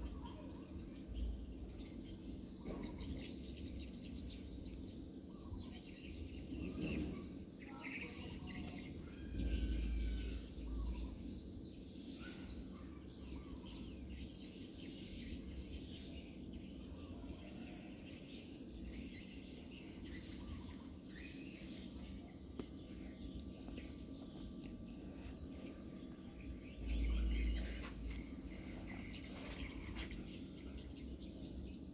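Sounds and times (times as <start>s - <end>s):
faint insects chirping: 0.0s - 31.9s
low rumbles on microphone: 19.1s - 31.9s.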